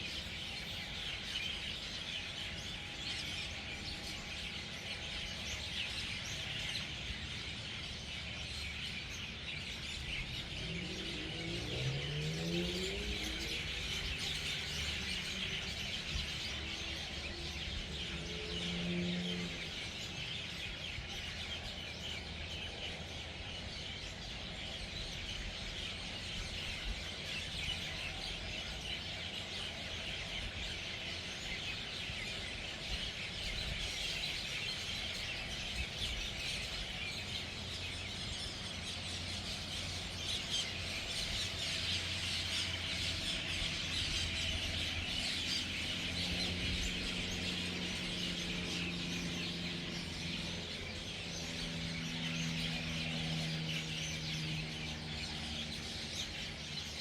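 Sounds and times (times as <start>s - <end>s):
flock of birds chirping: 0.0s - 57.0s.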